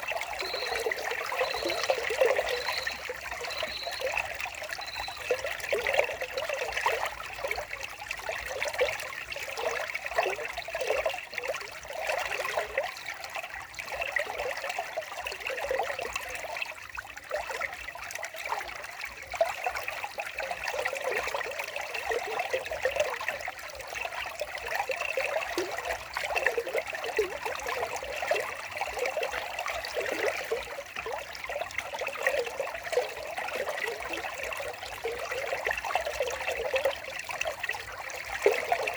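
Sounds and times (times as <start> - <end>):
water trickling: 0.0 - 38.9.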